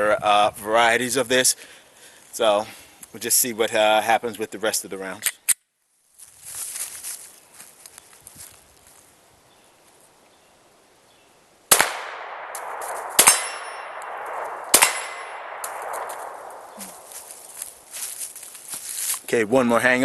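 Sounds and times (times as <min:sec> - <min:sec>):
pistol shots: 0:11.7 - 0:17.4.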